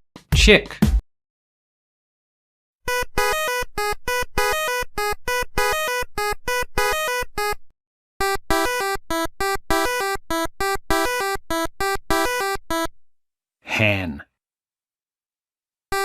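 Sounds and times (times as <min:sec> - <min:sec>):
synthesizer melody: 0:02.9 - 0:07.6.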